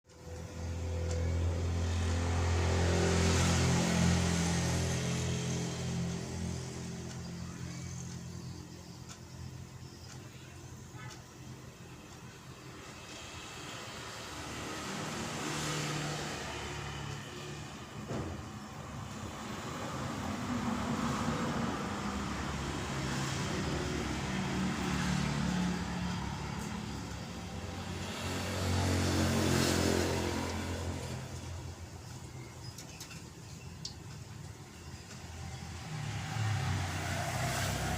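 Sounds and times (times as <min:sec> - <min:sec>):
street traffic noise: 0:00.0 - 0:37.9
vehicle engine passing by: 0:00.3 - 0:08.3, 0:13.1 - 0:32.1, 0:35.3 - 0:37.9.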